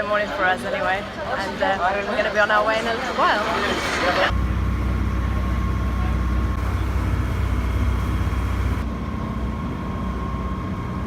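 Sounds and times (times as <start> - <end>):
engine humming with whine: 3.1 - 11.0.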